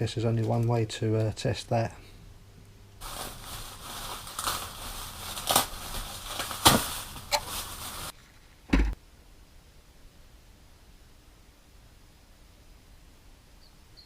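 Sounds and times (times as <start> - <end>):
sheet material rustling and crackling: 3.0 - 8.2
low thump: 8.7 - 9.0.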